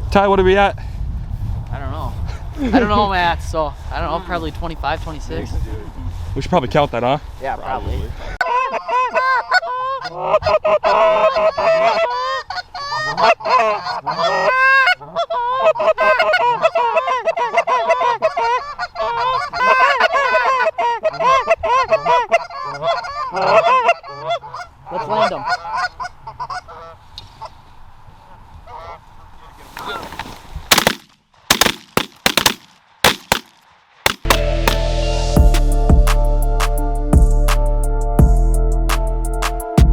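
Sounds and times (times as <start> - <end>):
geese honking and clucking: 8.4 - 27.6, 28.6 - 30.8
shotgun blasts: 30.7 - 34.4.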